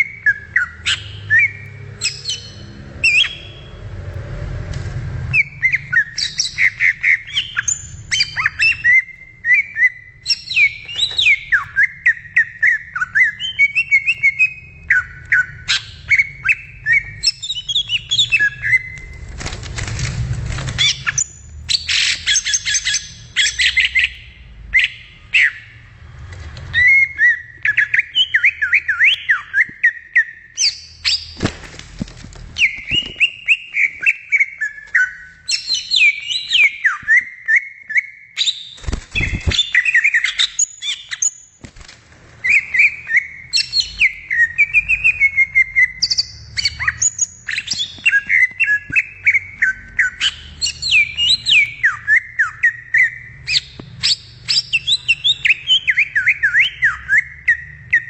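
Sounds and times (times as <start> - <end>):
bird singing chirps and whistles: 0.0 - 3.8, 5.3 - 19.1, 20.8 - 25.8, 26.7 - 31.5, 32.6 - 41.5, 42.4 - 58.0.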